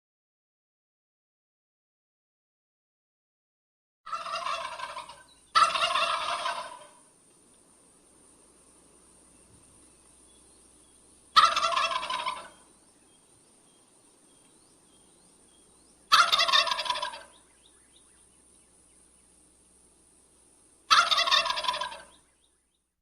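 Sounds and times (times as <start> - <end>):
wild turkey gobbling: 4.1 - 7.1, 9.8 - 13.2, 14.4 - 19.2, 20.8 - 22.5
faint background hiss: 4.1 - 23.0.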